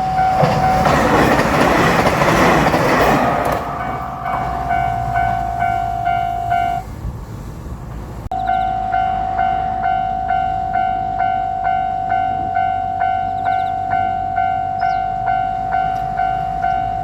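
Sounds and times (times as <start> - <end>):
level crossing bell clanging: 0.0 - 6.8.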